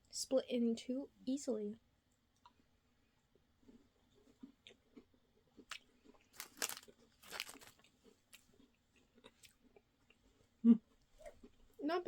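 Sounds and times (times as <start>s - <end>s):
cookie crunching: 3.6s - 10.2s.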